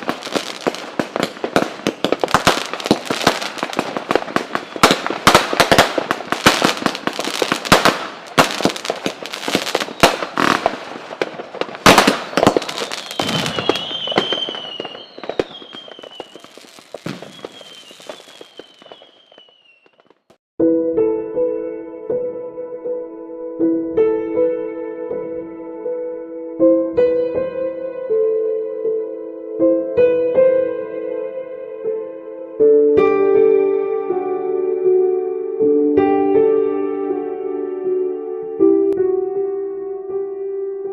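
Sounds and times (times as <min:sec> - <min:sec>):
fireworks banging and crackling: 0:00.0 - 0:20.4
high descending whistle: 0:13.0 - 0:16.5.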